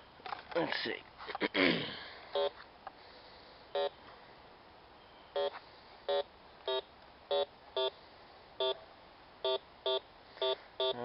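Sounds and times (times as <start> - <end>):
metal detector beeping: 2.3 - 2.6, 3.7 - 4.0, 5.0 - 7.9, 8.6 - 8.8, 9.4 - 11.0.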